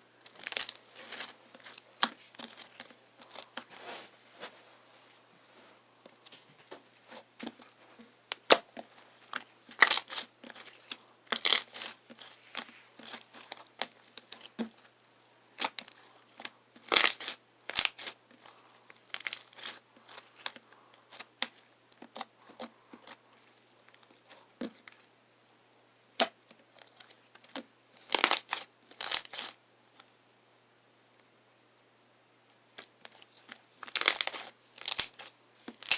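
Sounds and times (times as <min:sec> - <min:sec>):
slime crackling and popping: 0:00.2 - 0:03.5, 0:08.3 - 0:14.9, 0:15.6 - 0:23.2, 0:26.2 - 0:29.6, 0:33.8 - 0:35.9.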